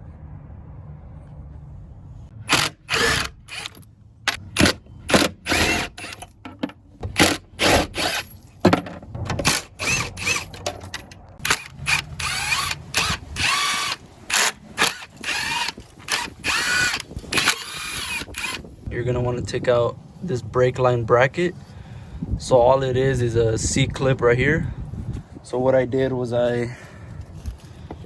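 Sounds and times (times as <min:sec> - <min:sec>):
power drill whining: 0:02.4 - 0:06.3, 0:07.2 - 0:08.2, 0:09.5 - 0:10.6, 0:11.4 - 0:18.6.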